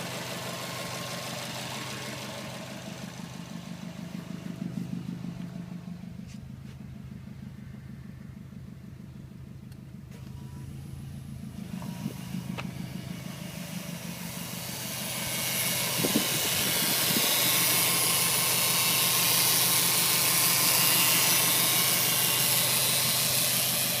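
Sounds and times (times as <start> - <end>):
car engine idling: 0.0 - 24.0
click: 9.7 - 10.4.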